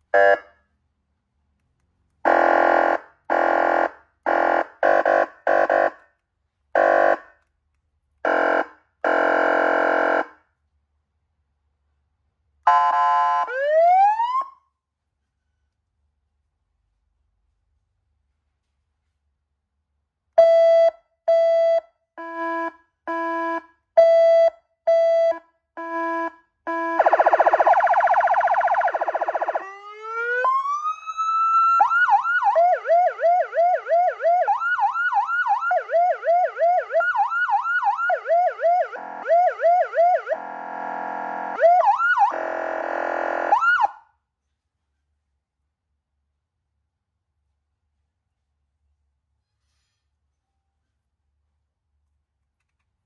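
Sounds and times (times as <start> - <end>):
electronic police siren: 12.7 - 14.6, 25.8 - 44.0.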